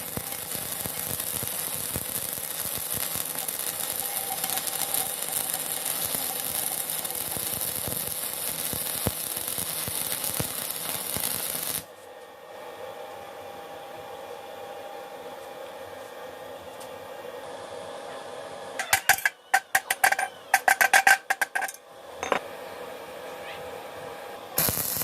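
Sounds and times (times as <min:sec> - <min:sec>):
electric arc welding crackle: 0:00.0 - 0:11.9, 0:18.8 - 0:21.8, 0:24.6 - 0:25.0.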